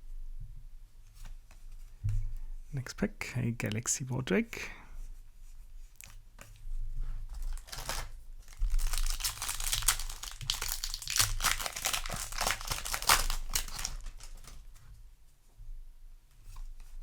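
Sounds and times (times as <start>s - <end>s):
foil wrapper tearing and crinkling: 7.3s - 14.8s.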